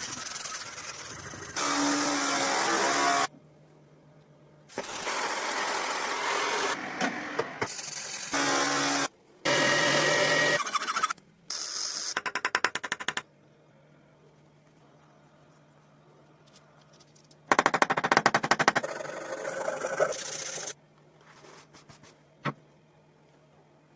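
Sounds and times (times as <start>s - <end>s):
faint low hum: 13.3s - 17.5s.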